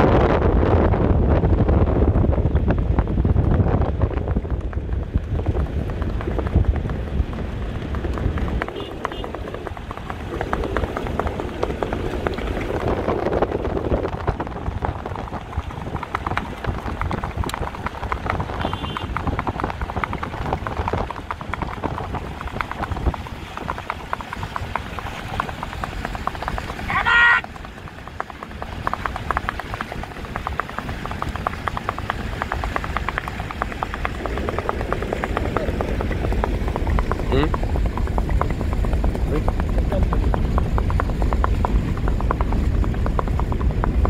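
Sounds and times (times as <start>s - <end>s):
horse hooves clattering: 1.6s - 44.0s.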